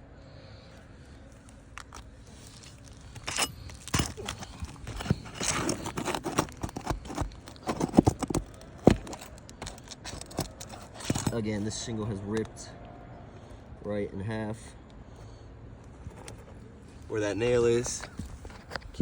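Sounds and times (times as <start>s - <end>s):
shingle crackling and tearing: 1.4s - 11.5s
metal pry tool clicking and scraping: 1.8s - 11.4s.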